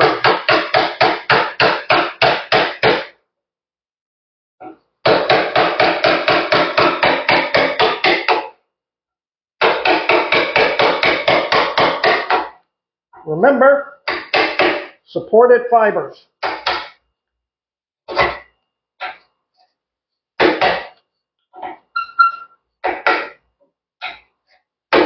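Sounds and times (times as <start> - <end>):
mallet striking chisel in wood: 0.0 - 3.2, 4.6 - 8.6, 9.6 - 12.6, 14.0 - 15.0, 16.4 - 17.0, 18.1 - 19.3, 20.4 - 21.1, 22.8 - 23.4, 24.0 - 24.3.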